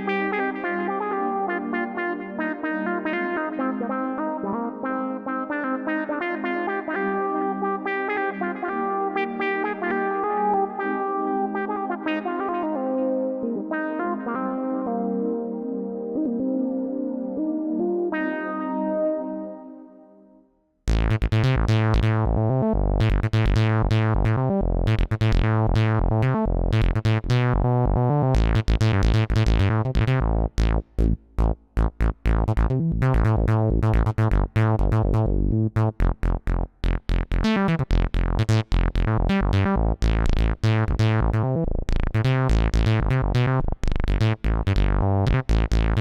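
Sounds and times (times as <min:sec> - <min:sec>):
synth keyboard rhythmic chords: 0:00.0 - 0:46.0
deep synth bass: 0:20.9 - 0:46.0.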